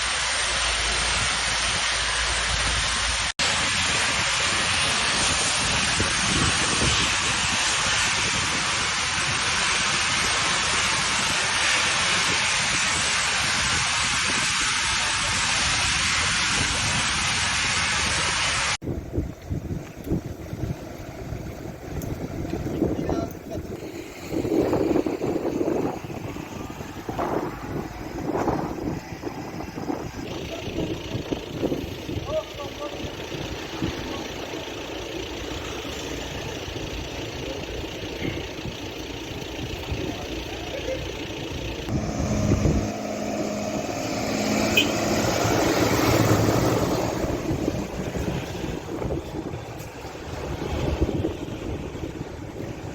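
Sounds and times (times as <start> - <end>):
vehicle engines rumbling: 0.0 - 17.1, 18.0 - 52.9
wind noise on microphone: 0.0 - 34.2, 41.5 - 52.9.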